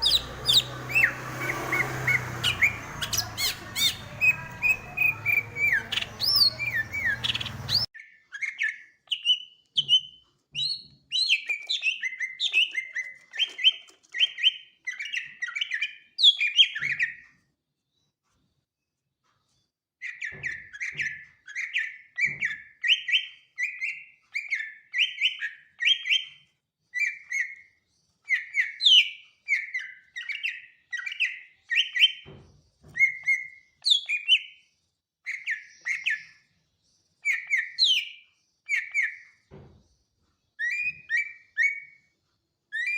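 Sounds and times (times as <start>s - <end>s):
bird singing whistled chattering notes: 0.0s - 17.2s.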